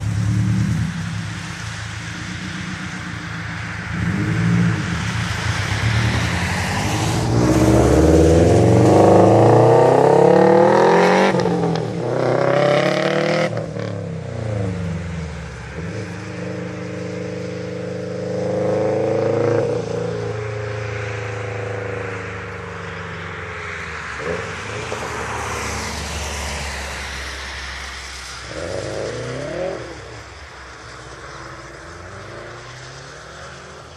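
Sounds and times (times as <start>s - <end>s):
car engine revving: 0.0s - 22.7s, 23.4s - 33.9s.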